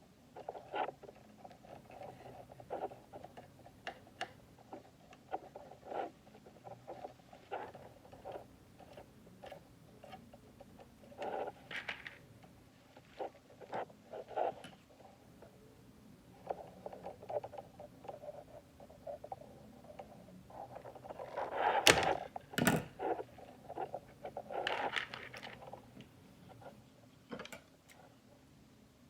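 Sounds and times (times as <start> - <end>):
clicks and rustles of wires: 19.9 - 28.0.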